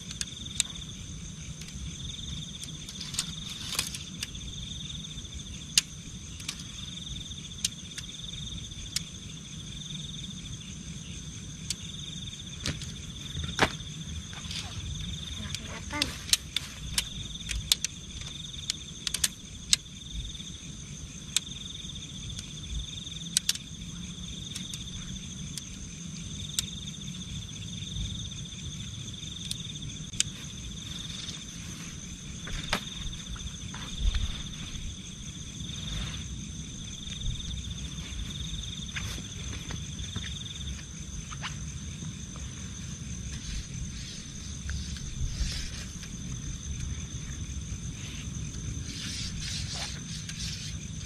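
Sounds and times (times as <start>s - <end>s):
insect high-pitched whine: 0.0s - 51.0s
insect pulsing trill: 0.0s - 51.0s
wind rumble on microphone: 27.4s - 51.0s.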